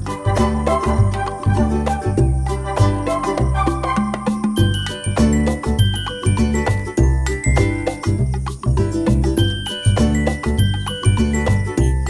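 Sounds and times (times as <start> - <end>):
bell-like melody notes: 0.0 - 12.0
pulsing bass notes: 0.0 - 12.0.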